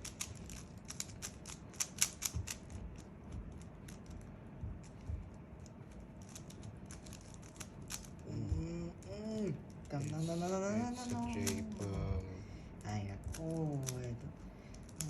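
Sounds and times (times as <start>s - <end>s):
puzzle cube plastic clicks: 0.0s - 8.2s, 14.7s - 15.0s.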